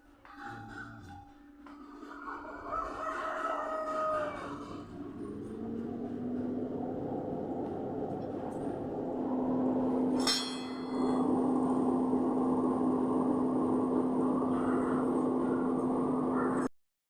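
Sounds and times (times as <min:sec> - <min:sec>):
power hammer motor humming: 0:04.6 - 0:16.7
metallic clang: 0:10.0 - 0:11.2.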